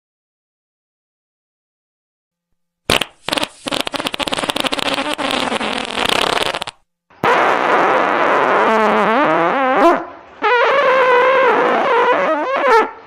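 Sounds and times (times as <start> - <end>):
fart sounds: 2.9 - 13.0.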